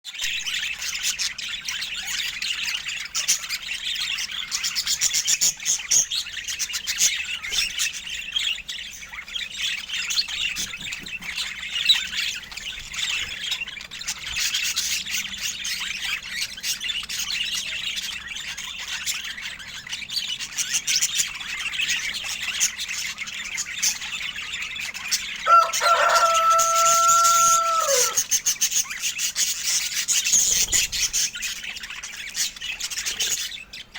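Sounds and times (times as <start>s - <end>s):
budgerigars chirping: 0.2s - 33.9s.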